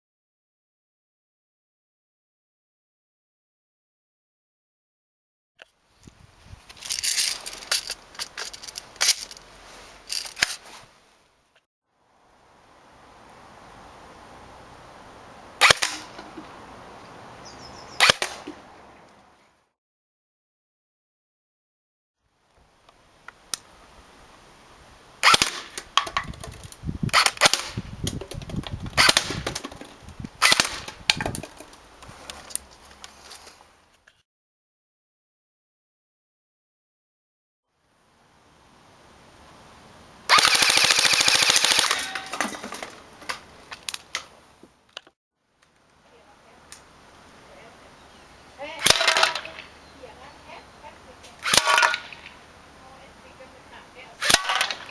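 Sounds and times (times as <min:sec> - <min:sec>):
toy gun handling clicks and rattles: 0:06.7 - 0:09.4, 0:10.1 - 0:10.6, 0:40.3 - 0:42.5, 0:48.8 - 0:49.6
faint steady hiss: 0:22.2 - 0:26.0, 0:45.5 - 0:48.8
airsoft gun firing bursts: 0:25.2 - 0:25.8, 0:29.0 - 0:29.4, 0:30.4 - 0:30.9, 0:40.3 - 0:42.2, 0:54.2 - 0:54.8.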